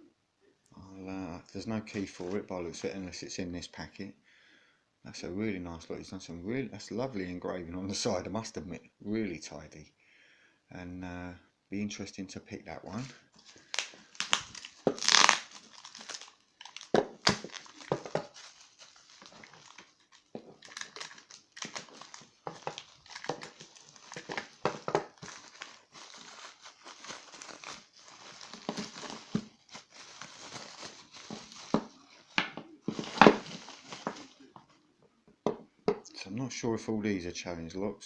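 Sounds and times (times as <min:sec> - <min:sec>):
packaging crinkling and rustling: 0:12.9 - 0:34.4
sharp crackle: 0:13.4 - 0:31.8.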